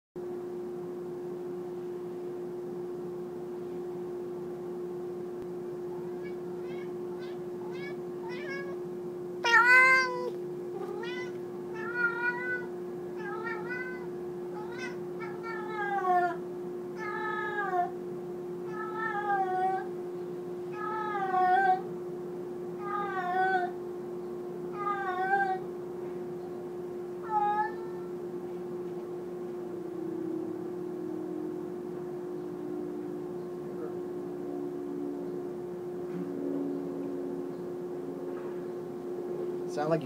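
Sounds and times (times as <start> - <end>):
steady low hum: 0.2 - 40.0
cat meowing loudly: 9.4 - 16.4.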